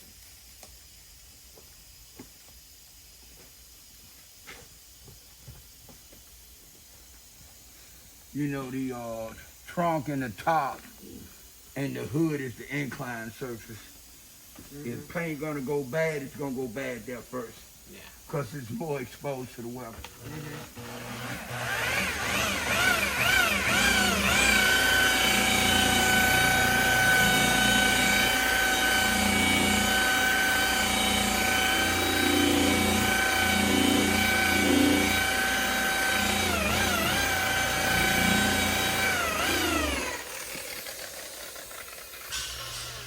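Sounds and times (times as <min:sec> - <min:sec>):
electric polisher motor whining: 0:20.1 - 0:43.0.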